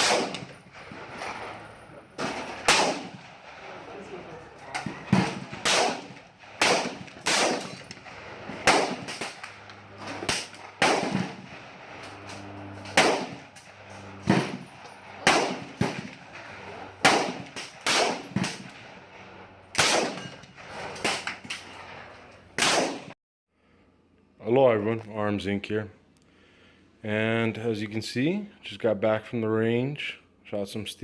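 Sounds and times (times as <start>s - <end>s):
rifle shots echoing: 0.0s - 23.2s.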